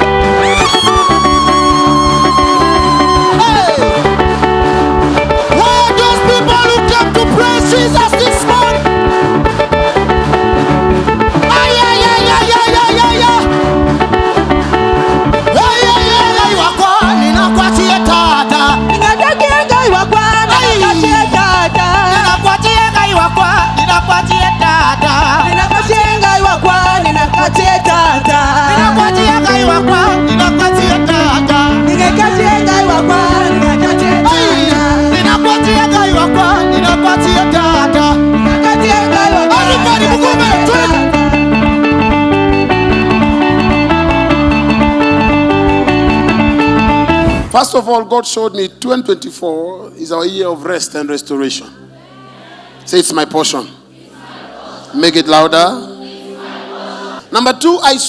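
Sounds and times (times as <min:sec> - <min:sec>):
upbeat dance music with bass: 0:00.0 - 0:47.5
steady drum beat: 0:00.0 - 0:47.6
person singing: 0:00.2 - 0:04.6, 0:05.2 - 0:08.9, 0:11.4 - 0:13.6, 0:15.4 - 0:41.9.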